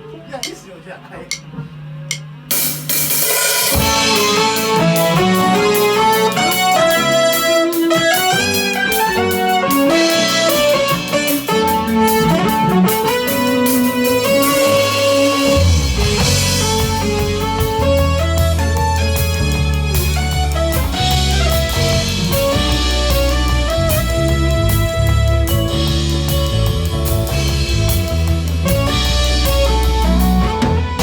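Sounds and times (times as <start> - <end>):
keyboard: 0.0 - 31.0
drums with cymbal beat: 0.4 - 0.6, 1.2 - 31.0
band playing: 2.5 - 31.0
guitar: 3.1 - 31.0
deep bass notes: 14.2 - 31.0.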